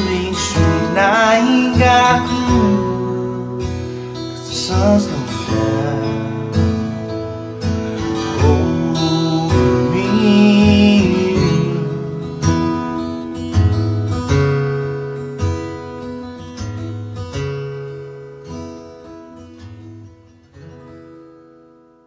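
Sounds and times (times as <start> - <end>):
acoustic guitar plucking and strumming: 0.0 - 22.0.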